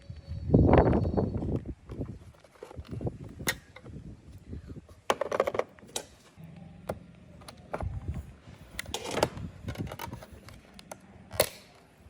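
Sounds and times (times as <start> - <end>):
low steady hum: 2.9 - 12.0
small parts and tools clattering: 4.9 - 6.4, 8.7 - 11.8.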